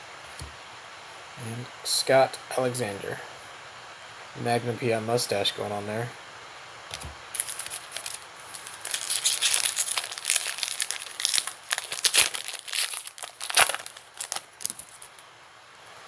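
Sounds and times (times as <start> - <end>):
wrapper being torn and crinkled: 7.3 - 15.2.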